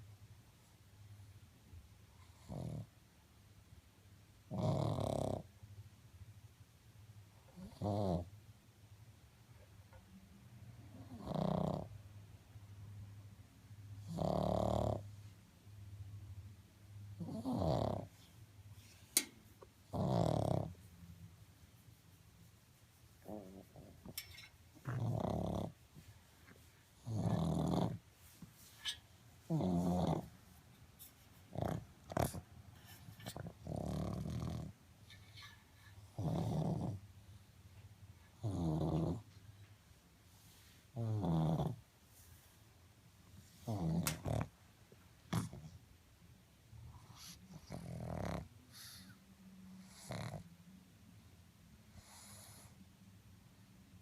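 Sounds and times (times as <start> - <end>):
dog snoring: 2.2 - 2.9, 4.5 - 5.5, 7.5 - 8.3, 10.9 - 11.9, 14.0 - 15.1, 17.2 - 18.3, 19.8 - 20.8, 24.8 - 25.8, 27.0 - 28.0, 29.5 - 30.3, 31.5 - 32.4, 33.2 - 34.8, 36.0 - 37.0, 38.3 - 39.3, 40.9 - 41.8, 43.6 - 44.5, 45.3 - 45.8, 46.9 - 49.2, 49.8 - 50.5, 51.9 - 52.8.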